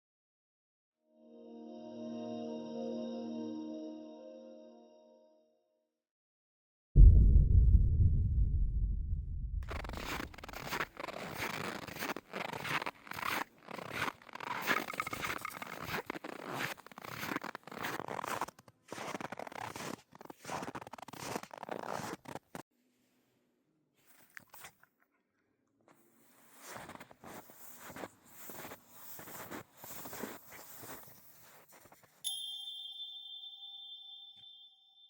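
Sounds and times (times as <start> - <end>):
footsteps crunching through snow: 9.7 - 22.6, 26.2 - 32.2.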